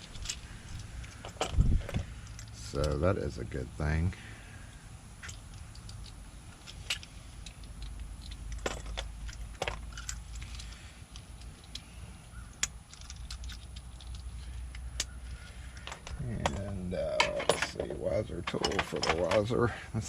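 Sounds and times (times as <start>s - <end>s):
metallic clicks of lock parts: 0.0s - 3.2s, 5.2s - 19.6s
low rumble: 16.0s - 17.4s.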